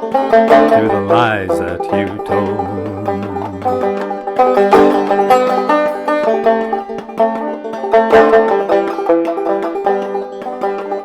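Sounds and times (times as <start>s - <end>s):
banjo plucking and strumming: 0.0s - 11.0s
person singing: 0.7s - 4.0s.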